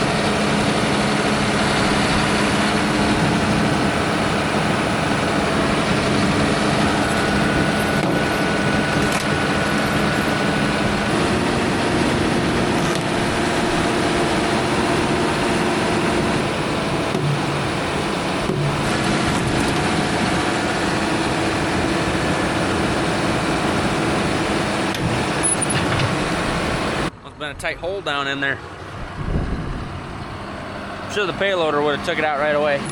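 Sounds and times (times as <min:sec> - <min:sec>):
heavy machinery engine running: 0:00.0 - 0:32.9.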